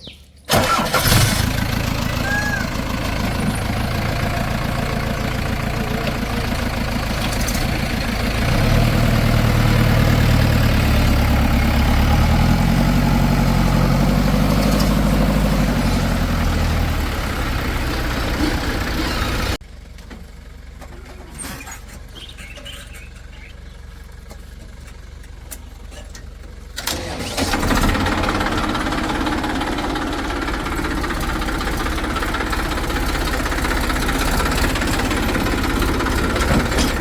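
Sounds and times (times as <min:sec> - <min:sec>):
heavy diesel engine revving: 0:00.5 - 0:19.6, 0:26.7 - 0:37.0.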